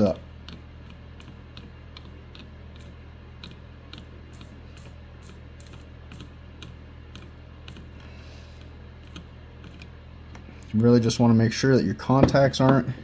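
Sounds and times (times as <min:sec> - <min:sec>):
steady low hum: 0:00.0 - 0:13.0
small soldering clicks: 0:00.4 - 0:10.8.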